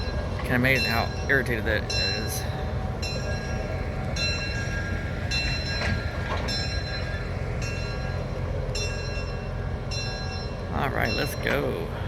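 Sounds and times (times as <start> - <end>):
low train rumble: 0.0 - 12.0
train bell ringing: 0.0 - 12.0.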